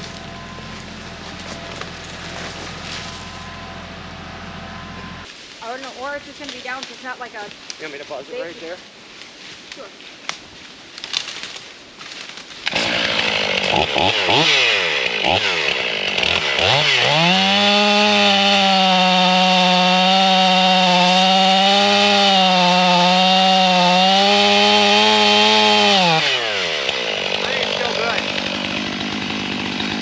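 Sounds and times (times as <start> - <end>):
chainsaw revving and cutting: 0.0 - 5.3, 12.6 - 30.0.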